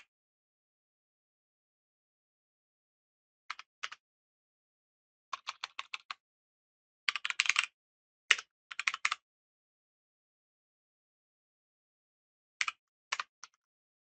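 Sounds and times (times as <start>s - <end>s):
keyboard typing: 5.4s - 6.1s.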